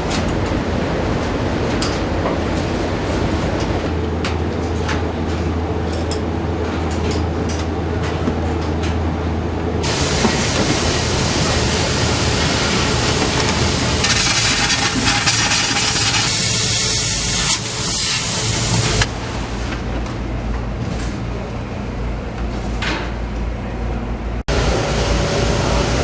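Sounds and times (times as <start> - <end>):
pressurised air hissing: 9.8 - 19.1.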